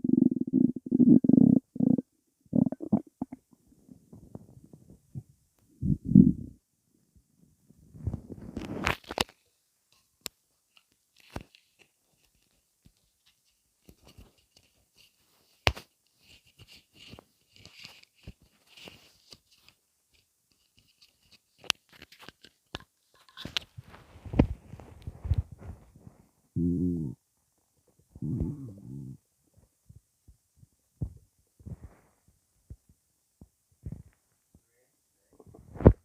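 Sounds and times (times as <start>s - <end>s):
stomach gurgling: 0.0s - 6.6s, 28.1s - 29.2s, 35.3s - 36.0s.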